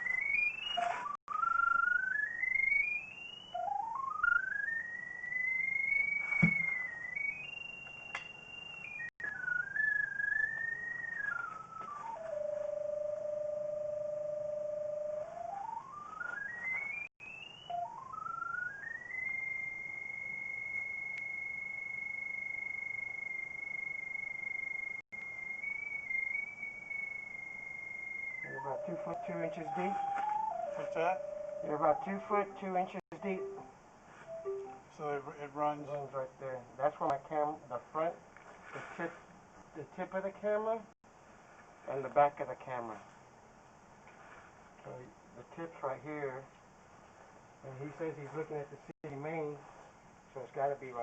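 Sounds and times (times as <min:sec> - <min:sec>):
electronic tone sliding in pitch: 0:00.0 - 0:21.9, 0:25.3 - 0:33.7.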